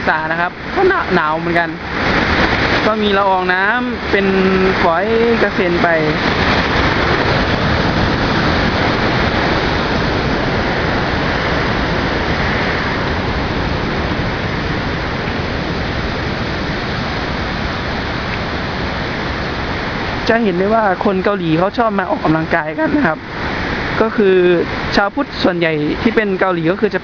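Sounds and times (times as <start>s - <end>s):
waterfall rushing: 0.0s - 27.0s.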